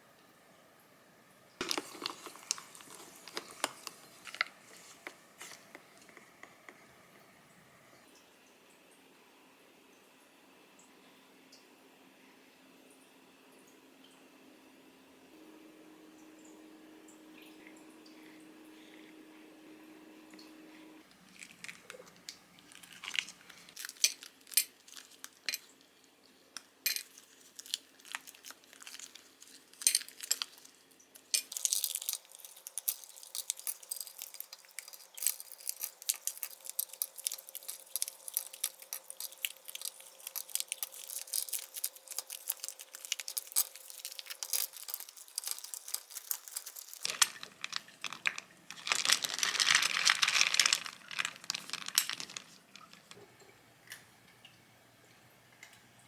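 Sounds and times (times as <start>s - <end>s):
utensils and dishes clicking: 1.6s - 4.5s, 26.9s - 53.3s
rapid crackling: 36.4s - 53.1s.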